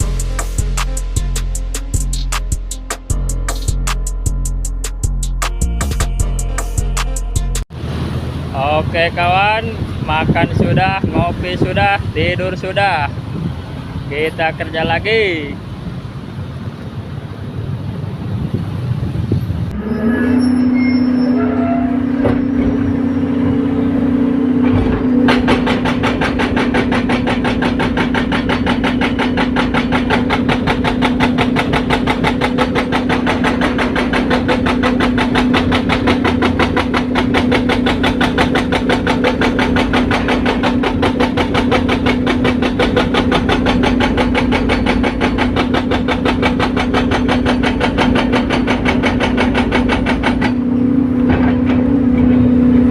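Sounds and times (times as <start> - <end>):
excavator engine droning: 0.0 - 52.9
hydraulic breaker hammering asphalt: 24.4 - 52.9.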